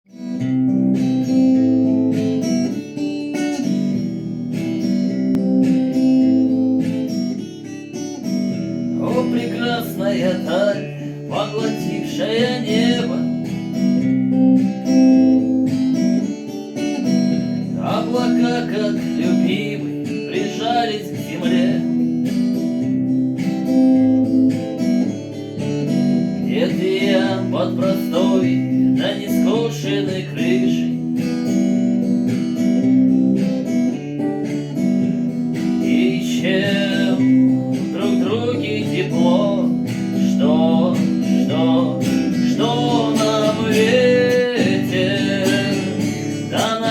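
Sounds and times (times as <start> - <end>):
acoustic guitar strumming chords: 0.1 - 46.9.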